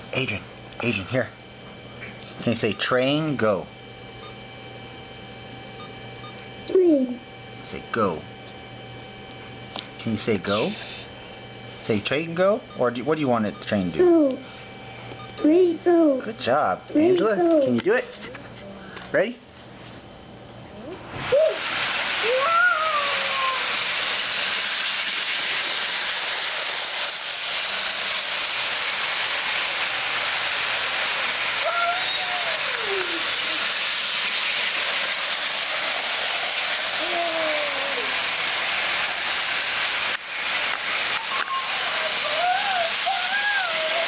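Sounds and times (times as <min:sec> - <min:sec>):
child squealing: 0:21.3 - 0:21.6, 0:22.2 - 0:23.8, 0:31.6 - 0:33.7, 0:37.0 - 0:38.2, 0:41.2 - 0:44.0
toy train rushing on track: 0:21.5 - 0:44.0.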